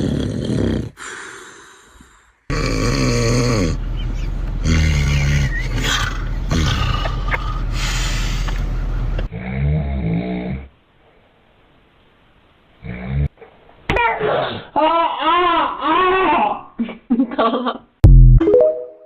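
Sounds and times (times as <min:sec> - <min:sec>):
loud snoring: 0:00.0 - 0:01.2, 0:02.5 - 0:03.8, 0:04.6 - 0:07.6, 0:09.3 - 0:10.7.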